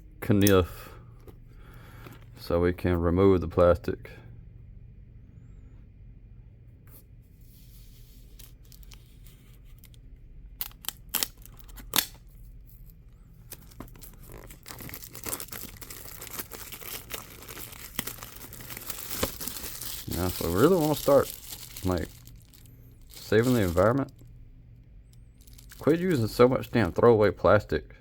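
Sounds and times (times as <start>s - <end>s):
plastic crinkling and tearing: 8.2s - 10.0s, 10.6s - 24.3s, 25.3s - 27.1s
knife cutting plastic wrap: 13.6s - 24.1s.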